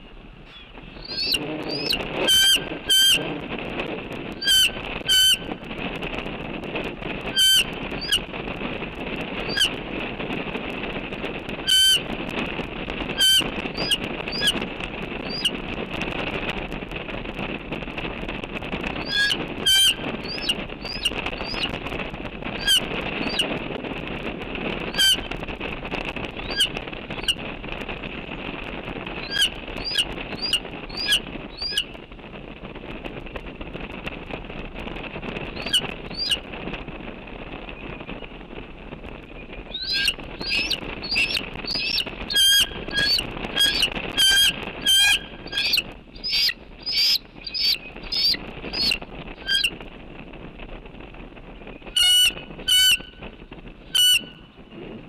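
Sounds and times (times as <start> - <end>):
eagle calling: 0.5 - 3.4, 4.4 - 5.4, 9.5 - 9.7, 13.2 - 14.6, 15.3 - 15.5, 19.0 - 21.7, 22.6 - 23.5, 24.9 - 25.3, 29.2 - 31.9, 39.7 - 49.7, 52.0 - 53.1, 54.0 - 54.3.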